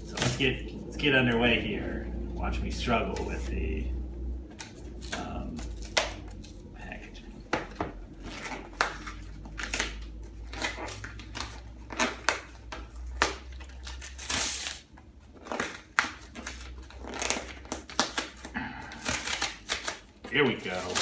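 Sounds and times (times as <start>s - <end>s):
cardboard ripping: 0.0s - 0.6s, 8.2s - 21.0s
cardboard crunching and crinkling: 0.0s - 0.7s, 8.0s - 21.0s.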